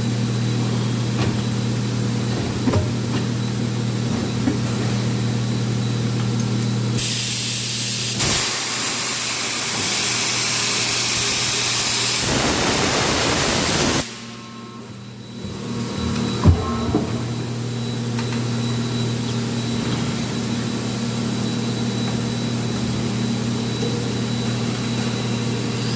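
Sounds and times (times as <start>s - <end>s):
factory machinery humming: 0.0s - 25.9s
loud hiss: 8.1s - 14.3s.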